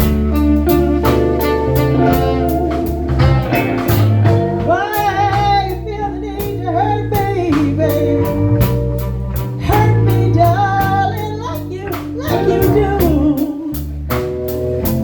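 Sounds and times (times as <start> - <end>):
bass: 0.0 - 15.0
drums keeping a steady beat: 0.0 - 15.0
person singing: 2.0 - 14.0.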